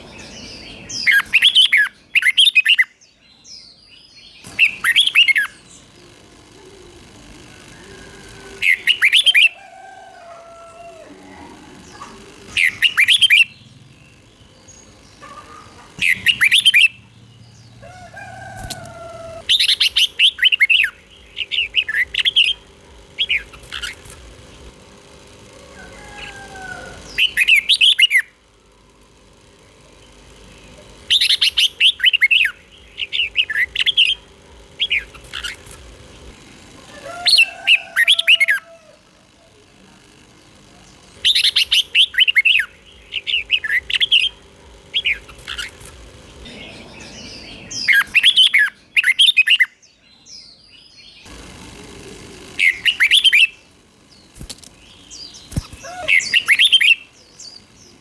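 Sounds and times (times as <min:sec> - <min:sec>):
bird chirping: 0:00.0 - 0:24.8, 0:40.8 - 0:51.4, 0:52.2 - 0:58.0
faint steady hum: 0:00.0 - 0:58.0.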